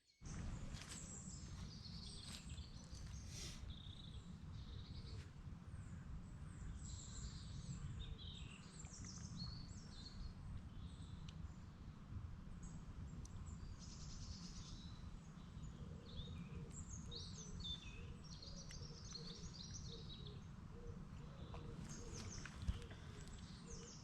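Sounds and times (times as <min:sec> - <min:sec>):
low rumble of wind: 0:00.2 - 0:24.0
birds singing and chirping: 0:00.3 - 0:05.2, 0:13.5 - 0:24.0.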